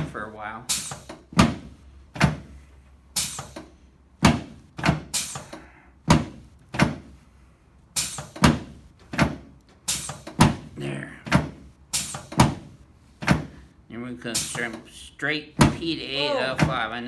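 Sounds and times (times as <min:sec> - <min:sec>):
adjusting table knocking: 0:12.3 - 0:13.6.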